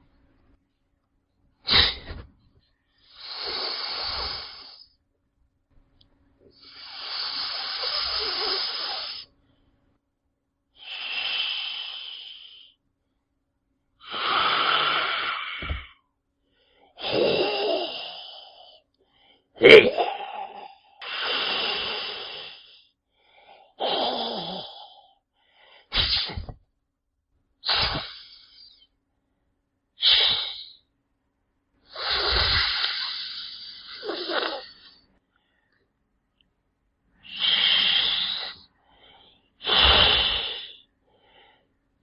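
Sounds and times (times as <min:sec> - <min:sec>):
snake hissing: 0:03.0 - 0:04.9, 0:06.6 - 0:09.3, 0:10.8 - 0:12.8, 0:14.0 - 0:15.8, 0:21.0 - 0:22.8, 0:30.0 - 0:30.8, 0:31.9 - 0:35.0, 0:37.2 - 0:38.7, 0:39.6 - 0:40.8.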